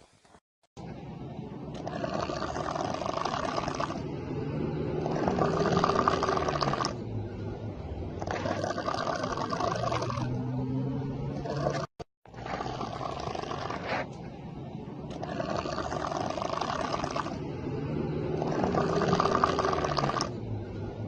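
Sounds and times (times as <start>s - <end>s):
person snoring heavily: 1.8s - 4.0s, 4.6s - 7.0s, 8.2s - 10.3s, 11.4s - 14.1s, 15.2s - 17.4s, 18.3s - 20.3s.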